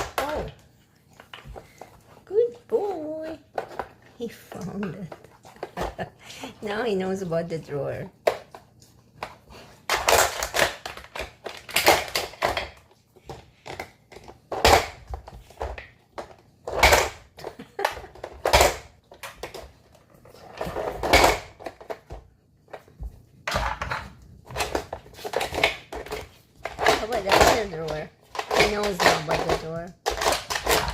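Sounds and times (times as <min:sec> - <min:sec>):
plastic toy clattering and knocking: 0:03.0 - 0:06.1, 0:09.2 - 0:30.9.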